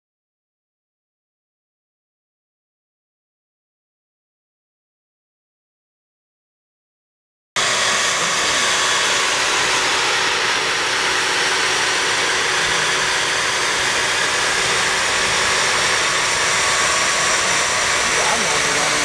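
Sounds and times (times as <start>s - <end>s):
vacuum motor rushing air: 7.6s - 19.0s.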